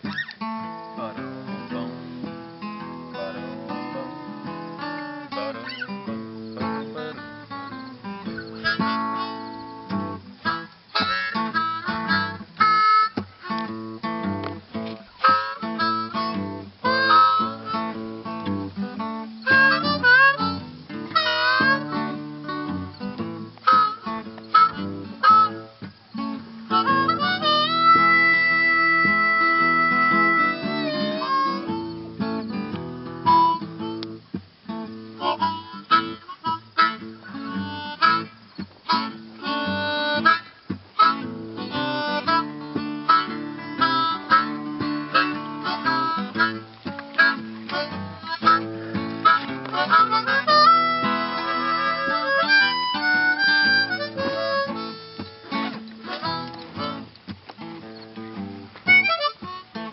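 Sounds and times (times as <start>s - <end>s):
acoustic guitar: 0.0s - 59.9s
harmonica melody: 0.0s - 59.9s.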